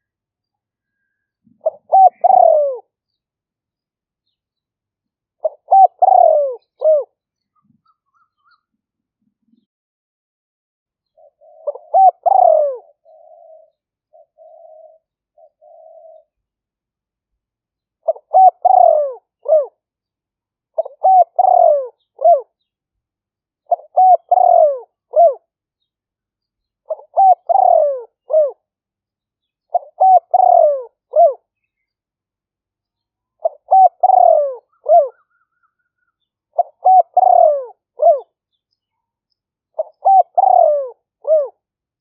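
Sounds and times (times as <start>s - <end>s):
dove cooing: 1.4s - 3.0s, 5.4s - 8.6s, 11.2s - 16.4s, 18.0s - 19.8s, 20.8s - 22.6s, 23.7s - 25.5s, 26.8s - 28.6s, 29.7s - 31.5s, 33.4s - 38.4s, 39.7s - 41.7s.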